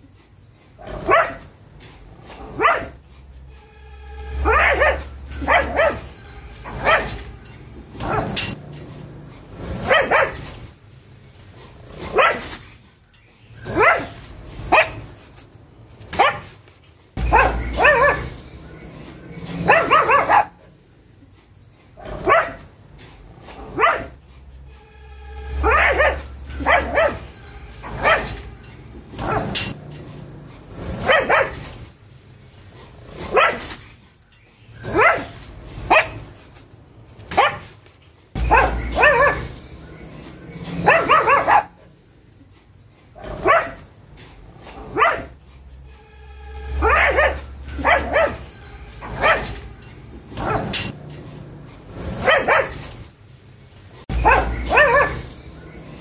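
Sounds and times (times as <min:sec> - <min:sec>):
dog barking: 0:00.8 - 0:01.5, 0:02.4 - 0:03.0, 0:04.4 - 0:07.3, 0:08.0 - 0:08.6, 0:09.7 - 0:10.5, 0:12.0 - 0:12.6, 0:13.6 - 0:15.1, 0:16.1 - 0:16.5, 0:17.2 - 0:18.9, 0:19.5 - 0:20.7, 0:22.0 - 0:22.7, 0:23.6 - 0:24.2, 0:25.5 - 0:28.5, 0:29.1 - 0:29.8, 0:31.0 - 0:31.7, 0:33.2 - 0:33.7, 0:34.8 - 0:36.3, 0:37.3 - 0:37.7, 0:38.4 - 0:41.8, 0:43.2 - 0:43.9, 0:44.7 - 0:45.4, 0:46.8 - 0:49.6, 0:50.3 - 0:50.9, 0:52.1 - 0:52.8, 0:54.1 - 0:55.9
dog drawn-out pitched cry: 0:02.2 - 0:03.1, 0:04.3 - 0:08.6, 0:09.6 - 0:10.6, 0:12.0 - 0:12.6, 0:13.6 - 0:15.2, 0:17.2 - 0:20.6, 0:22.0 - 0:22.6, 0:23.4 - 0:24.3, 0:25.5 - 0:29.8, 0:30.8 - 0:31.8, 0:34.8 - 0:36.3, 0:38.4 - 0:41.9, 0:43.2 - 0:43.8, 0:44.6 - 0:45.4, 0:46.7 - 0:49.7, 0:52.0 - 0:52.9, 0:54.1 - 0:56.0.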